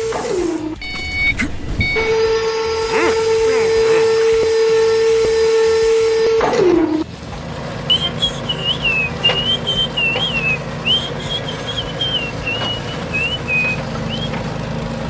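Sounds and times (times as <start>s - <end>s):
whistled tune: 0.0s - 7.0s, 7.8s - 14.6s
machine whine sliding down: 0.0s - 7.1s
steady low hum: 0.0s - 15.0s.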